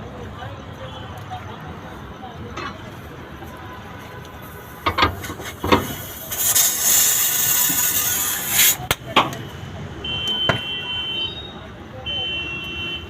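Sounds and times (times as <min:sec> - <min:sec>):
loud high-pitched hiss: 0:05.6 - 0:08.9.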